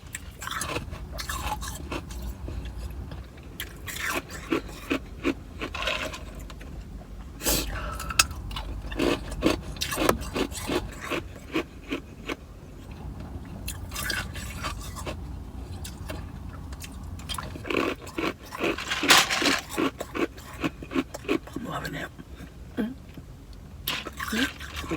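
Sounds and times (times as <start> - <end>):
ice cubes crunched by chewing: 3.6 - 6.7, 16.8 - 21.4.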